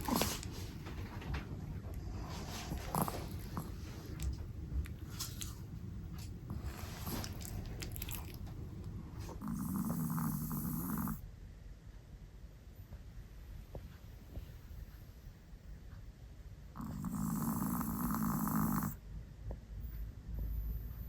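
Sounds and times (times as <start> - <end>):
dog snoring: 0.0 - 0.5, 1.9 - 4.4, 9.2 - 11.2, 16.7 - 19.0
soft snuffling with clicks: 0.0 - 11.2.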